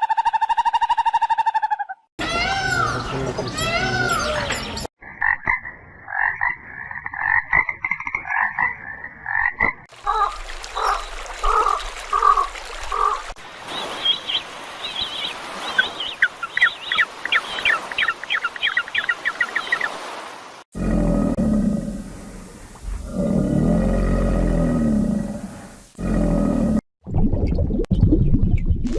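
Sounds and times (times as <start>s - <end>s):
frogs croaking: 2.3s - 13.2s.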